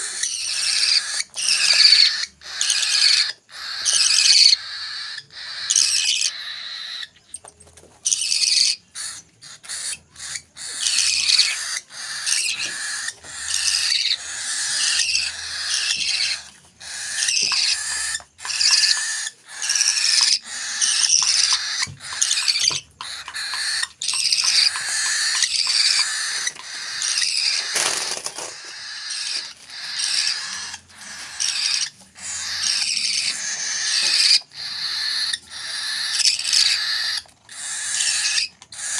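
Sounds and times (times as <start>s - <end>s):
parrot chicks begging calls: 0.0s - 7.4s, 8.0s - 38.9s.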